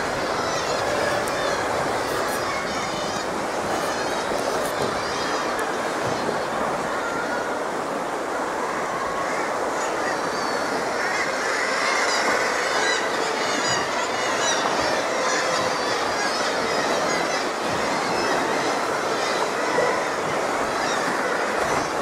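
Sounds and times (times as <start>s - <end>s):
seabirds chirping: 0.0s - 7.8s, 8.4s - 22.0s
sea water washing against rocks: 0.0s - 22.0s.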